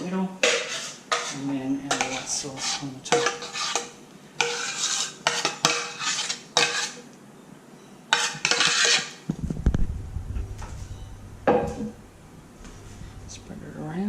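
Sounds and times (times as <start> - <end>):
metal utensil scraping a dish: 0.4 - 7.0, 8.1 - 9.2.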